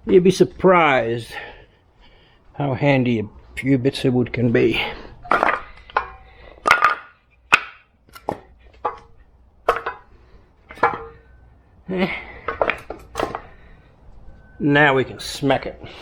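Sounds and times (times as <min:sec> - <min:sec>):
wood chunks knocking: 0:05.3 - 0:11.3, 0:12.4 - 0:13.7.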